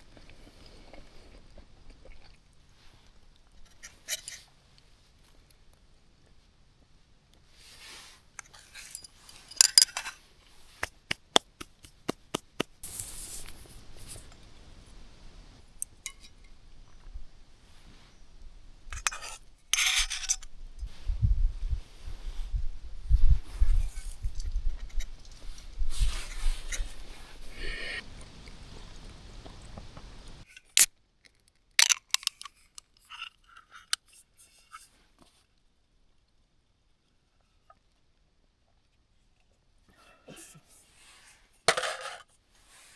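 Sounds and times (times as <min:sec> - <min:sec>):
crisp clicks: 0:10.8 - 0:13.0, 0:31.3 - 0:32.9.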